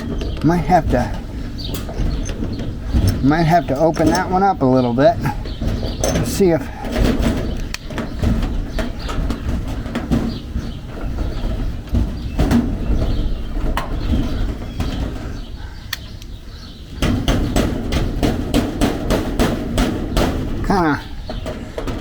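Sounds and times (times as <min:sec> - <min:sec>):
clicks and knocks on sheet metal: 0:00.0 - 0:22.0
wind rumble on microphone: 0:00.0 - 0:22.0.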